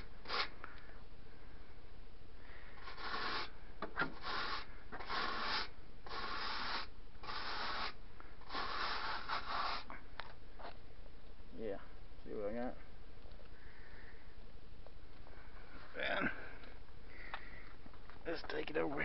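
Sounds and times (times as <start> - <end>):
brush scrubbing metal coil: 2.8 - 3.5, 4.2 - 9.9.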